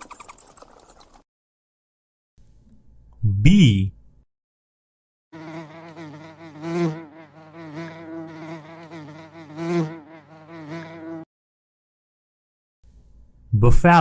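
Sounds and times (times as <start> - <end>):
honeybee buzzing: 5.3 - 11.3.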